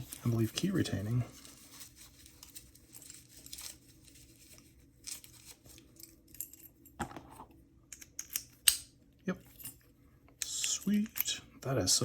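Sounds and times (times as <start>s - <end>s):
padlock and key rustling: 1.3s - 7.0s, 7.9s - 8.9s.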